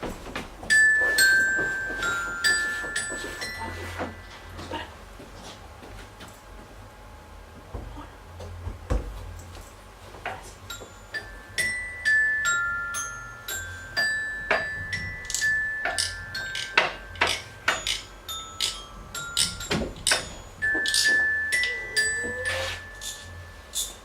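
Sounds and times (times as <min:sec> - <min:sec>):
struck glockenspiel-like notes: 0:00.7 - 0:04.8, 0:10.7 - 0:24.0.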